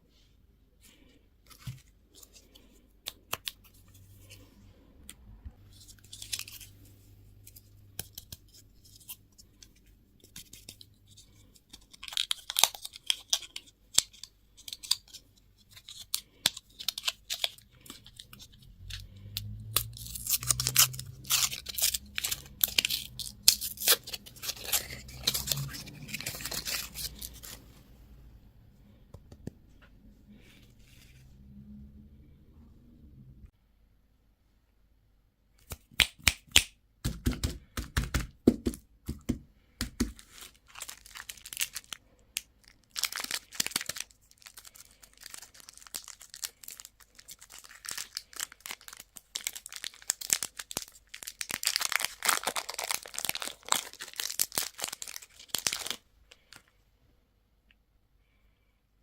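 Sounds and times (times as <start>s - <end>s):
plastic packaging crinkling: 19.4s - 27.6s, 40.0s - 56.6s.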